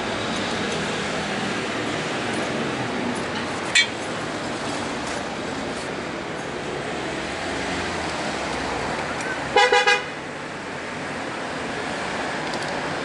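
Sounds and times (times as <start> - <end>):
street traffic noise: 0.0 - 13.0
vehicle horn toots: 9.6 - 10.2.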